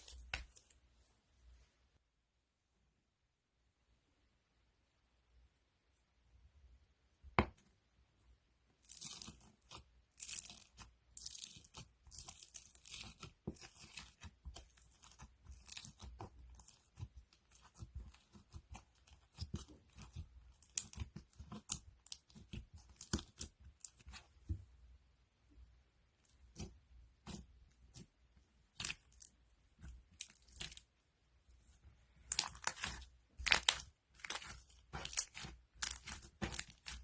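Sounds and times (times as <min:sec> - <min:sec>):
slime crackling and popping: 0:08.8 - 0:24.2, 0:32.2 - 0:37.0.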